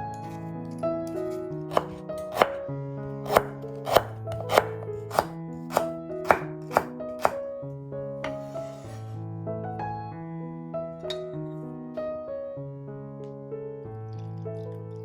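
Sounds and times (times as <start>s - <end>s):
sharp knocks: 3.3s - 7.4s.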